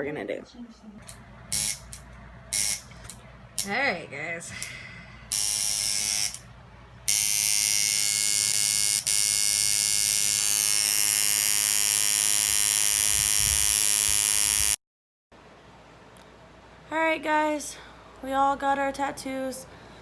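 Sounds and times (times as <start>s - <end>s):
electric tattoo machine buzzing: 1.5s - 2.9s, 5.3s - 6.5s, 7.1s - 14.8s.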